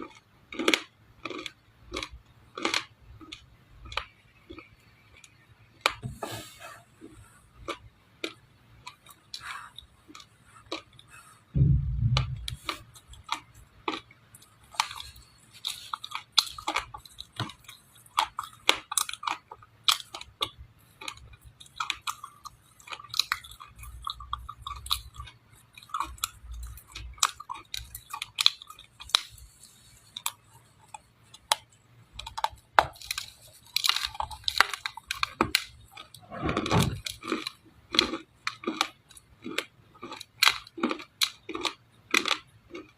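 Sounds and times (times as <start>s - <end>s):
dull low thump: 11.6s - 12.6s.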